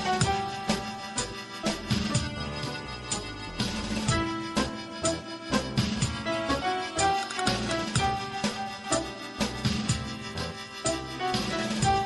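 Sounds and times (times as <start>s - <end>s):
phone ringtone melody: 6.7s - 10.3s.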